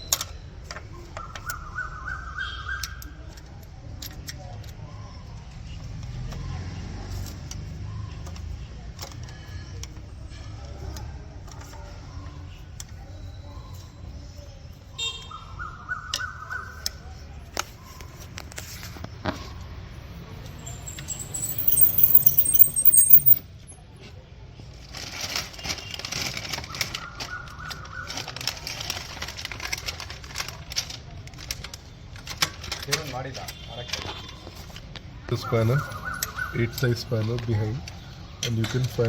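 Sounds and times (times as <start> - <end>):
hand tools clinking on metal: 20.6 - 23.4.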